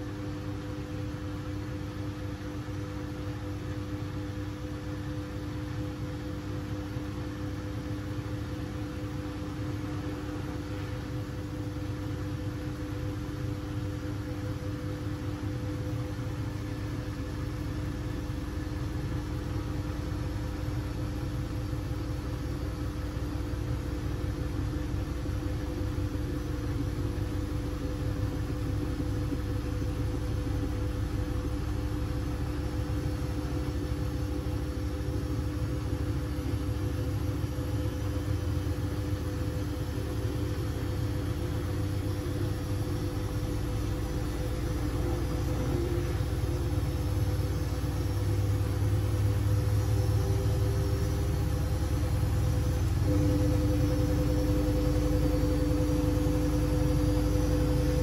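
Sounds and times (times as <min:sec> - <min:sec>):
washing machine motor hum: 0:00.0 - 0:58.0
washing machine drum rumble: 0:23.4 - 0:58.0.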